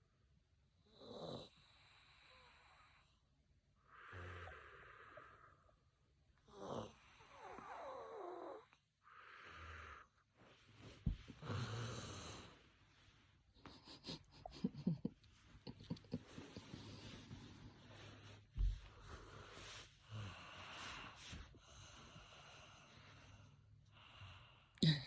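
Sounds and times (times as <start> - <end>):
soft snoring: 6.4 - 12.9.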